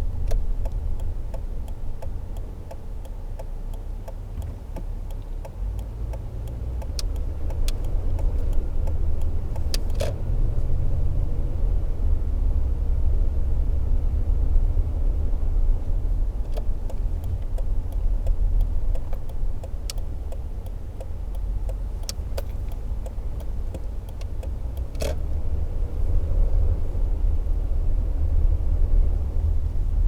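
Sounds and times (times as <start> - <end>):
engine and road noise: 0.0 - 30.0
light clicks and rattles: 16.0 - 25.6.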